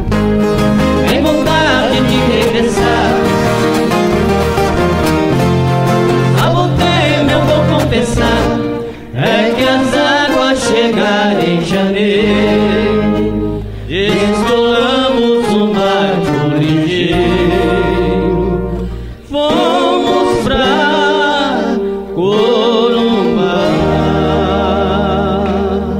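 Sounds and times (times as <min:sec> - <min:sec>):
steady low bass: 0:00.0 - 0:09.3, 0:16.8 - 0:19.4
guitar accompaniment: 0:00.0 - 0:25.9
group singing in harmony: 0:00.5 - 0:25.9.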